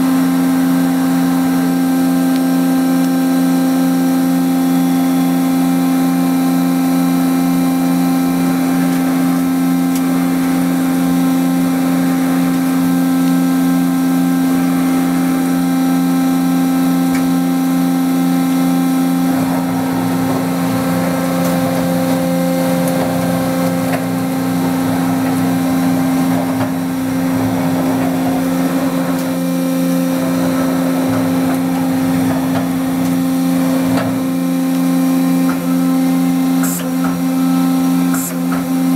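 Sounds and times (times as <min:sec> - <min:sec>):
cnc machine humming: 0:00.0 - 0:38.9
rough uneven machine noise: 0:07.5 - 0:38.9.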